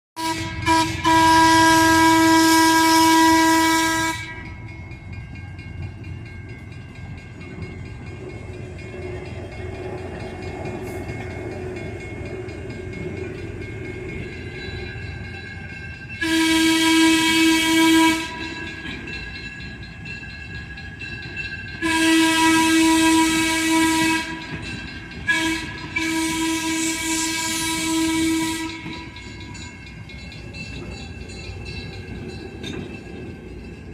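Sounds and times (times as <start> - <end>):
train horn blasts: 0.2 - 4.6, 16.2 - 18.7, 21.8 - 24.6, 25.2 - 29.2
train rumbling past: 0.2 - 33.9.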